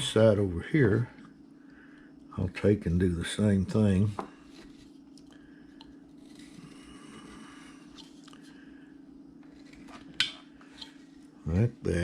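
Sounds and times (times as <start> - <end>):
steady low hum: 0.0 - 12.0
knife cutting wood: 9.4 - 11.0.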